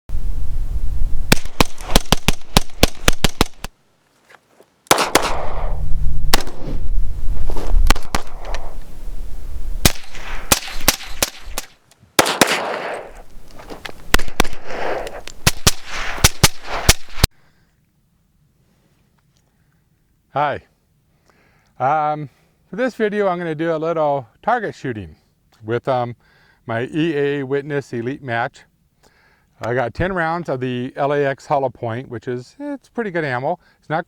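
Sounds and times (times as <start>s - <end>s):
rapid gunfire with echo: 1.3s - 3.6s, 4.9s - 5.7s, 12.2s - 13.1s.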